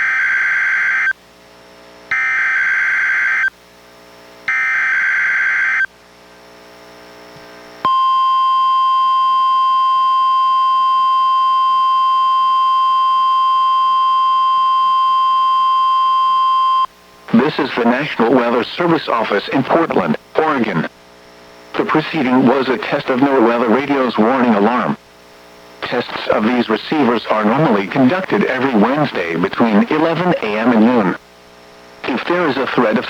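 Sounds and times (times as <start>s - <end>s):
steady alarm tone: 2.1s - 3.5s, 4.5s - 5.9s, 7.8s - 19.3s.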